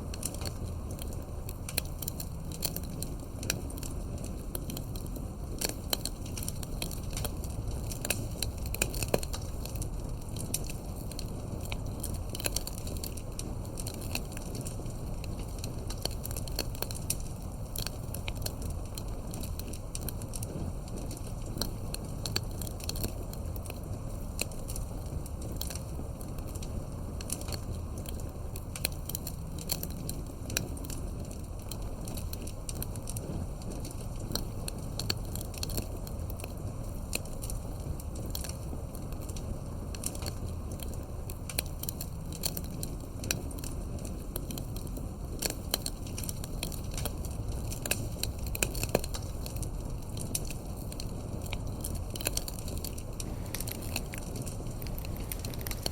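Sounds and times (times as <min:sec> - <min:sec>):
fire crackling and popping: 0:00.0 - 0:55.9.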